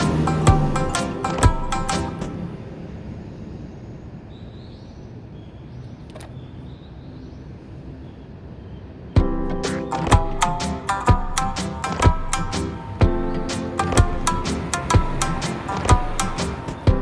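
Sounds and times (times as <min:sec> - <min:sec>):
music: 0:00.0 - 0:02.4, 0:09.2 - 0:17.0.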